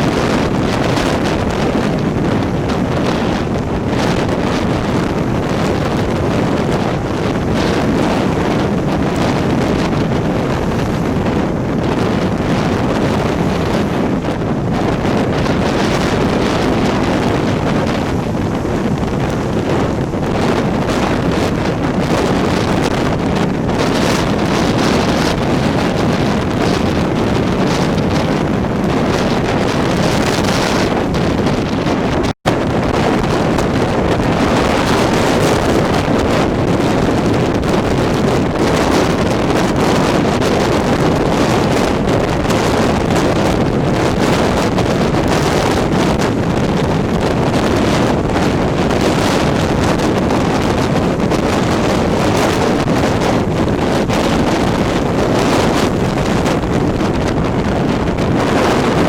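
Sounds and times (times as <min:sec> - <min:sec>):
wind buffeting microphone: 0:00.0 - 0:59.0.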